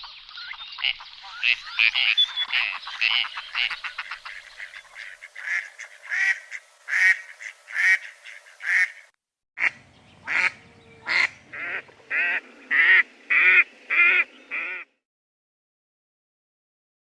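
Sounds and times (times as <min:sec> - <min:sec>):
ducks quacking: 0:00.8 - 0:14.9.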